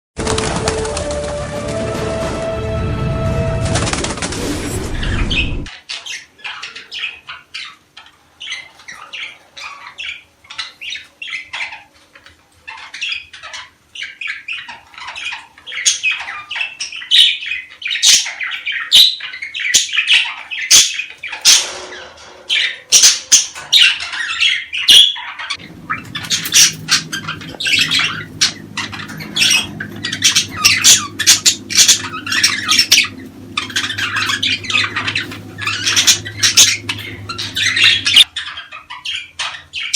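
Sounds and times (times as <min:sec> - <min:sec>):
budgerigars chattering: 0:05.3 - 0:39.9
steady low hum: 0:25.4 - 0:38.3.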